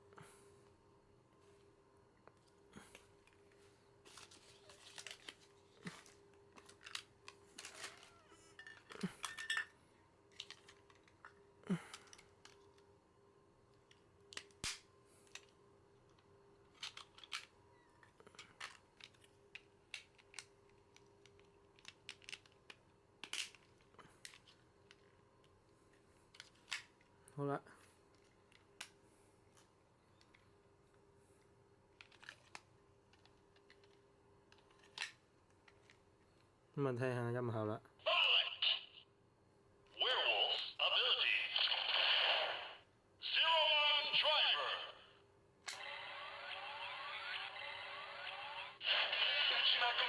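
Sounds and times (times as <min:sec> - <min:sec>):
faint steady hum: 0:00.0 - 0:50.0
plastic toy parts clicking: 0:16.7 - 0:25.1, 0:32.0 - 0:36.0.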